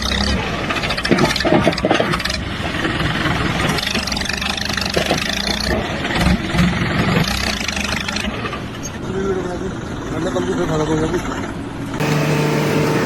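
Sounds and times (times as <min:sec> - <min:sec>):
engine running loudly: 0:12.0 - 0:13.0.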